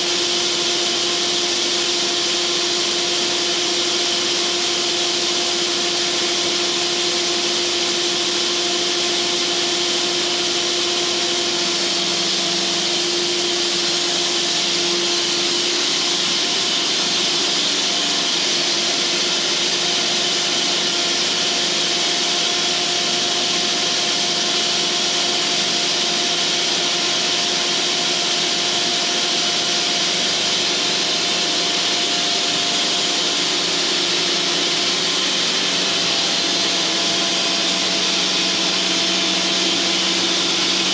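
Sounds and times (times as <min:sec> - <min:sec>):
machine hum: 0:02.7 - 0:40.9.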